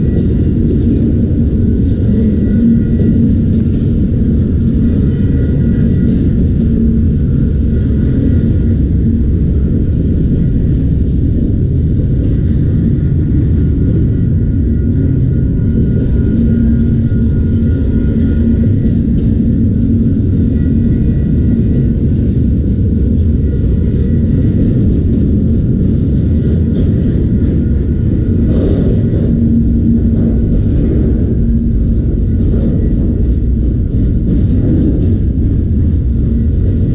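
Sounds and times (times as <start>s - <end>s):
faint steady whine: 0.0s - 36.9s
freight train wheels rumbling on rail: 0.0s - 36.9s.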